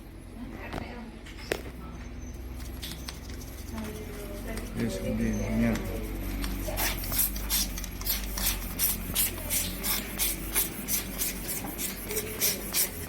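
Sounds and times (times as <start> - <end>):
steady low hum: 0.0 - 13.0
rhythmic scraping strokes: 3.1 - 13.0.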